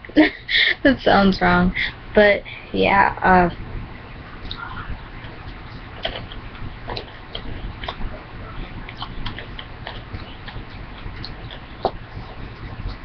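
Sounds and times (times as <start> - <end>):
low steady hum: 0.0 - 13.0
crunchy chewing clicks: 4.4 - 8.2, 8.8 - 13.0.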